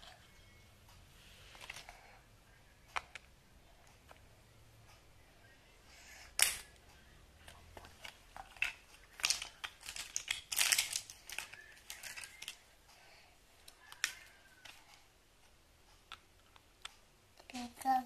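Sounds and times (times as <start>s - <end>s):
plastic toy parts clicking: 8.4s - 12.6s.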